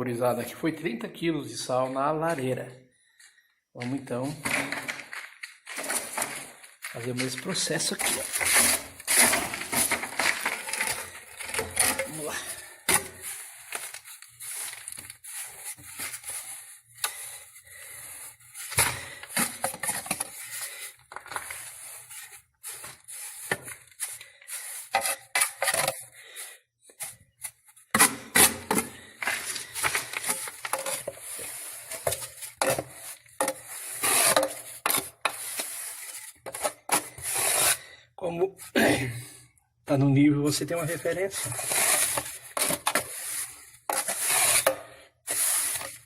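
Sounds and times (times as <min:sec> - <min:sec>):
tools scraping and clinking on salt: 0:41.4 - 0:46.0.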